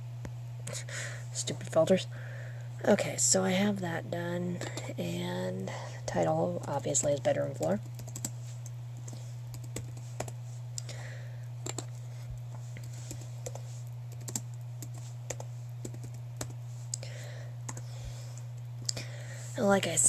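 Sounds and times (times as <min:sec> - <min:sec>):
steady low hum: 0:00.0 - 0:20.0
typing on computer keyboard: 0:07.9 - 0:08.4, 0:09.5 - 0:10.4, 0:11.6 - 0:11.9, 0:12.8 - 0:16.6.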